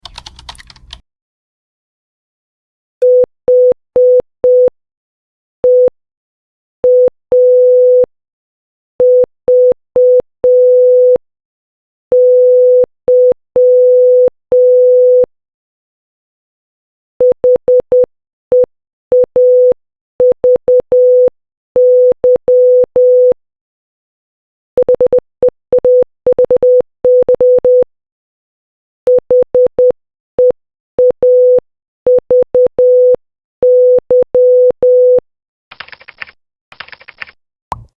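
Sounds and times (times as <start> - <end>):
morse code beeps: 24.8 - 25.2, 25.8 - 27.8.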